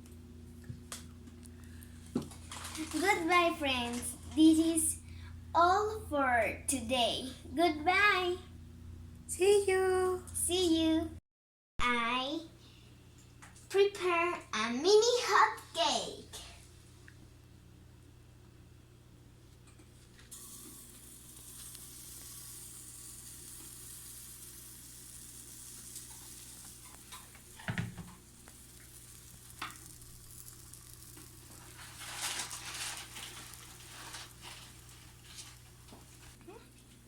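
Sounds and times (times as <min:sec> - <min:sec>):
batter sizzling in frying pan: 0:20.3 - 0:36.4
thump: 0:27.6 - 0:28.1.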